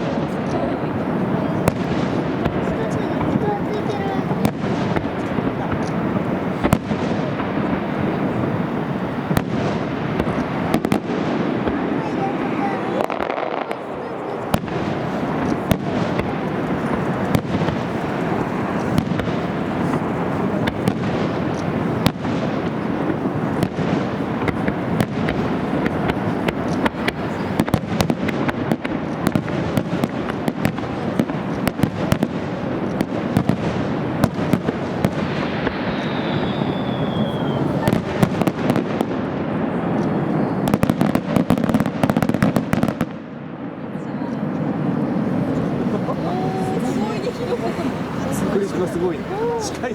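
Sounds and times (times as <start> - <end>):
fireworks bursts and crackling: 0.0 - 49.9
sharp fireworks bangs: 0.0 - 49.9
falling firework whistle: 35.1 - 38.5.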